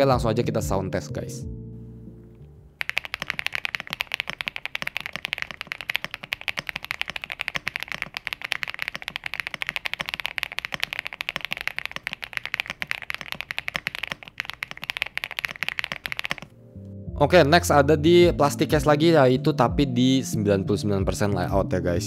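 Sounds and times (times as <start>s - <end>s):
mechanical keyboard typing: 2.8s - 16.5s.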